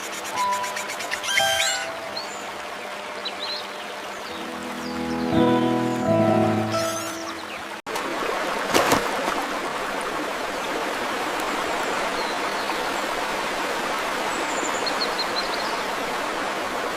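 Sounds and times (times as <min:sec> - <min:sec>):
stream water flowing: 0:00.0 - 0:16.9
faint high chirps: 0:00.4 - 0:02.6.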